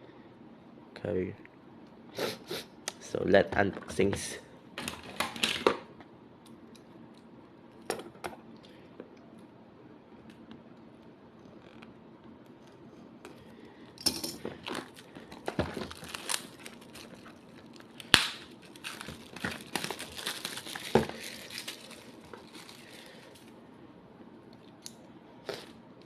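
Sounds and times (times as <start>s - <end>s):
packaging rustling and crinkling: 14.4s - 23.6s.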